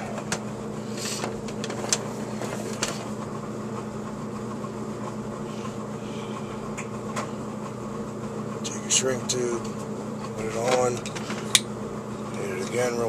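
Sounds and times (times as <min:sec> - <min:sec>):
machine humming: 0:00.0 - 0:13.0.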